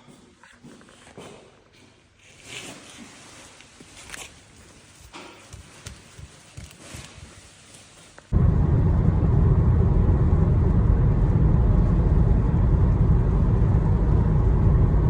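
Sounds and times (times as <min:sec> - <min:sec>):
car road and drivetrain rumble: 0:08.3 - 0:15.0.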